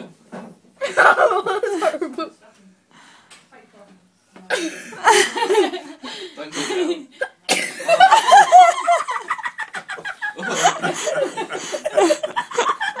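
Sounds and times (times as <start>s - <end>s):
person laughing: 8.1s - 13.0s.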